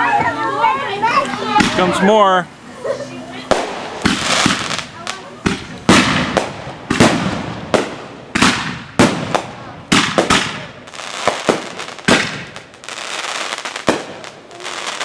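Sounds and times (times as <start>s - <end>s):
fireworks bangs with crackle: 1.5s - 1.9s, 3.4s - 15.0s.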